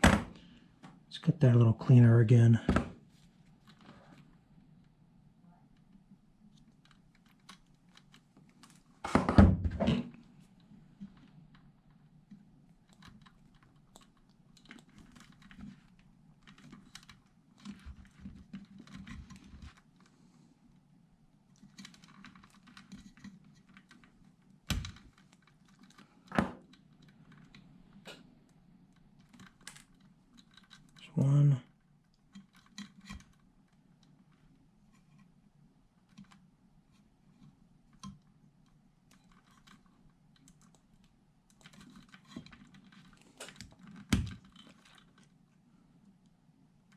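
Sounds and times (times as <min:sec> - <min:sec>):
hand tools clicking and scraping wire: 0:10.1 - 0:20.1, 0:21.5 - 0:35.4, 0:36.0 - 0:45.4.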